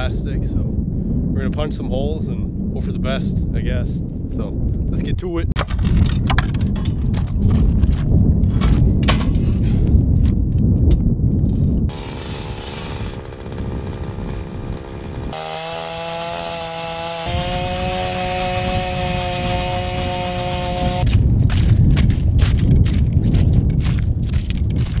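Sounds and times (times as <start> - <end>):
wind buffeting microphone: 0.0 - 25.0
ice auger motor drilling: 11.9 - 21.1.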